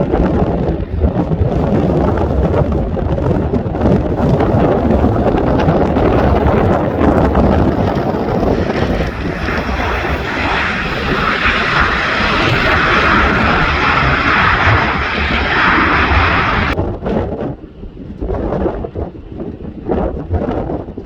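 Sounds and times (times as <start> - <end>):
airplane engines rumbling: 0.0 - 18.0
high engine whine: 4.5 - 16.8.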